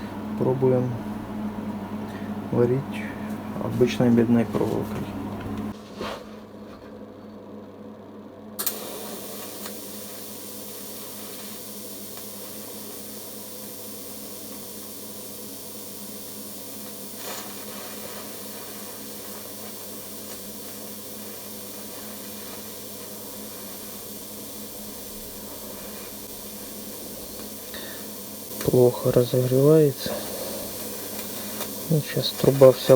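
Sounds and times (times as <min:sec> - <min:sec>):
welding arc crackle: 0:08.6 - 0:32.9
welding arc hissing: 0:08.6 - 0:32.9.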